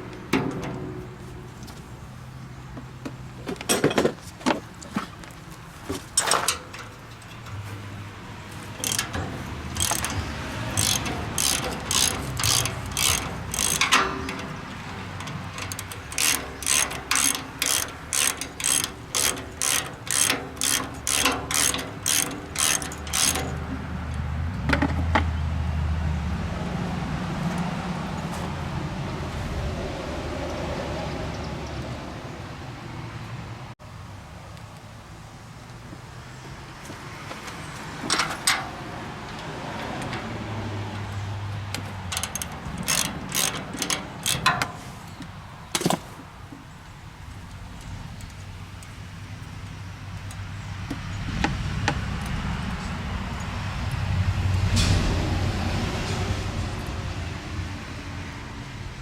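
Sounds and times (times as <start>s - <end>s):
ratchet wrench clicking: 8.7s - 24.2s, 41.7s - 45.2s.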